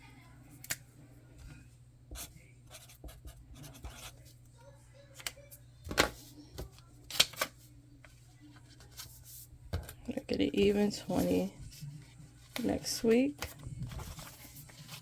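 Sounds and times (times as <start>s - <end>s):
pen scratching on paper: 2.1s - 4.2s.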